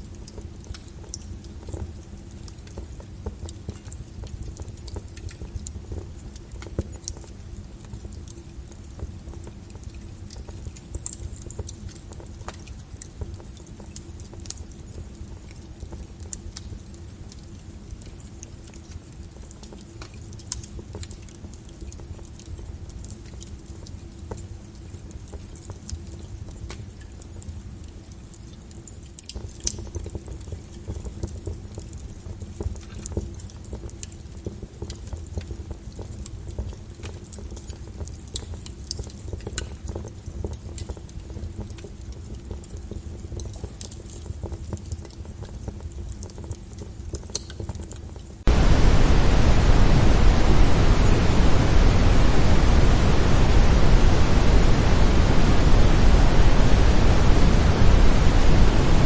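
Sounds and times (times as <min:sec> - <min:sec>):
fire crackling and popping: 0:00.0 - 0:59.0
low rumble: 0:48.5 - 0:59.0.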